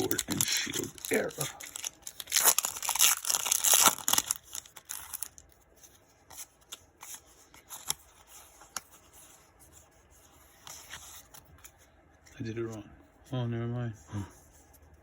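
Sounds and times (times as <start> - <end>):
foil wrapper crinkling: 0.0 - 5.6.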